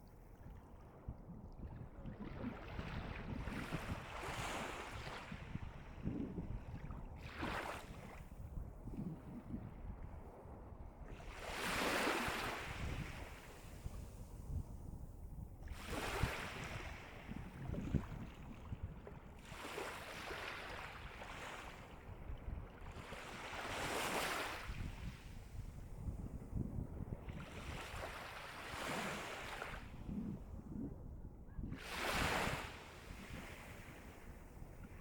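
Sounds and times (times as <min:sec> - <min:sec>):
waves breaking on shore: 0:11.3 - 0:13.8, 0:23.0 - 0:25.2, 0:31.8 - 0:35.0.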